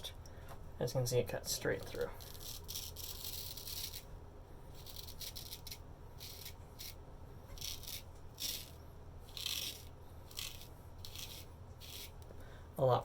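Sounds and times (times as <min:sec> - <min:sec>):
razor scraping stubble: 0:01.8 - 0:04.1, 0:04.7 - 0:12.3.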